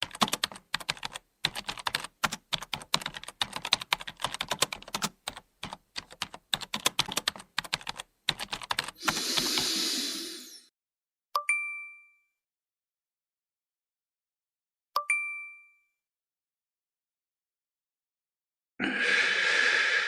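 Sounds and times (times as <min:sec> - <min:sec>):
computer keyboard typing: 0:00.0 - 0:09.8
rushing hiss: 0:09.0 - 0:10.6.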